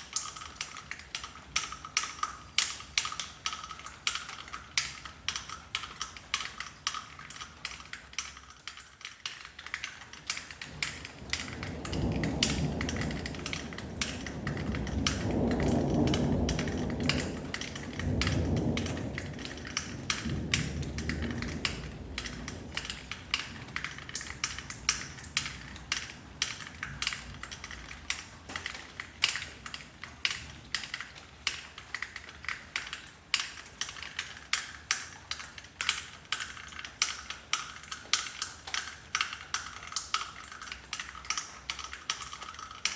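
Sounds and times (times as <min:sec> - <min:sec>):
raindrops dripping and tapping: 0:00.0 - 0:42.9
thunder rumble: 0:10.6 - 0:27.8.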